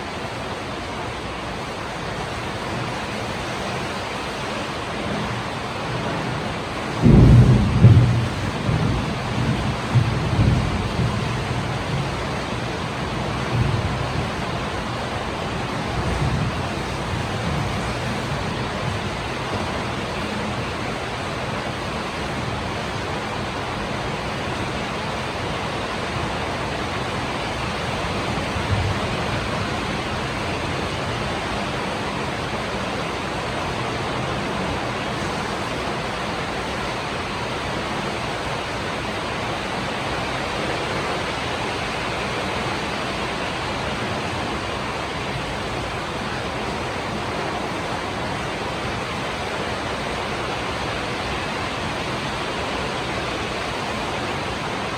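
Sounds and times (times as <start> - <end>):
heavy rain: 0.0 - 54.9.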